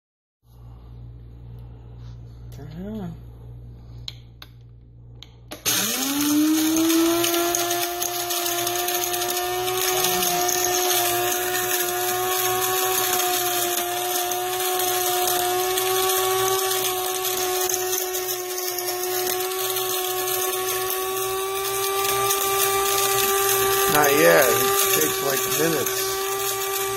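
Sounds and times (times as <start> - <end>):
coffee maker motor whine: 5.5 - 26.9.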